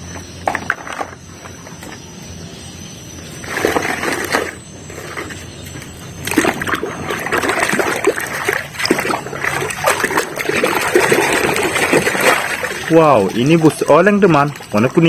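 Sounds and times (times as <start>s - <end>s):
water splashing and sloshing: 3.1s - 15.0s.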